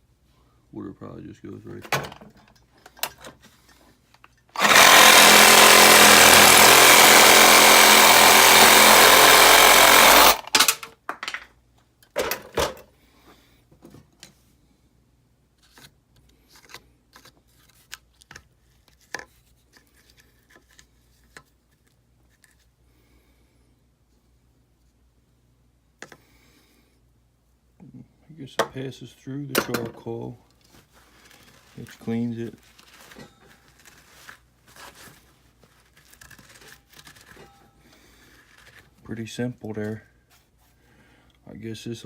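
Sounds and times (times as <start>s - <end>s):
power tool running: 4.6s - 10.6s.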